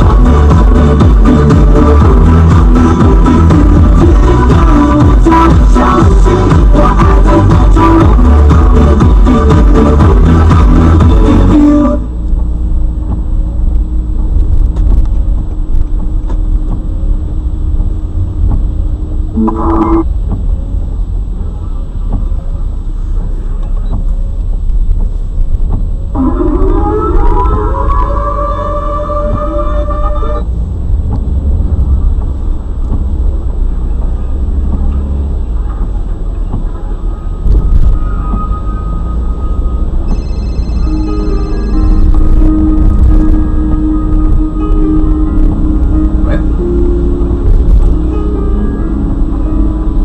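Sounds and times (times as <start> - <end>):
car cabin road and engine rumble: 0.0 - 50.0
short tonal sound: 19.3 - 20.1, 26.1 - 30.5, 37.4 - 50.0.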